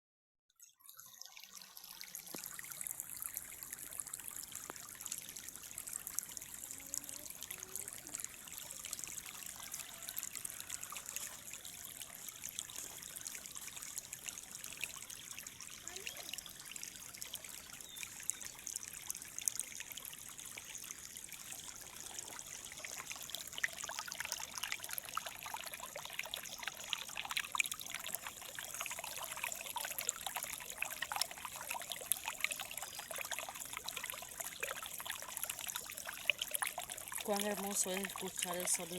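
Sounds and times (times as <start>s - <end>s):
river water babbling over stones: 20.6s - 38.9s.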